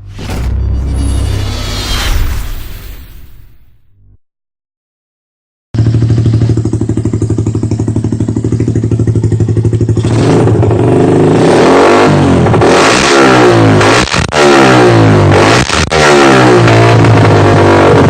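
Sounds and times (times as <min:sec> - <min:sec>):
motorcycle engine revving: 0:05.8 - 0:18.0.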